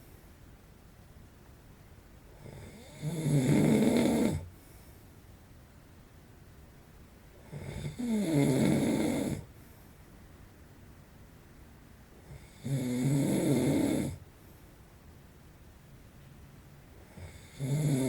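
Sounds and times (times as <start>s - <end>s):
man snoring: 2.4s - 4.5s, 7.4s - 9.5s, 12.3s - 14.2s, 17.1s - 18.0s.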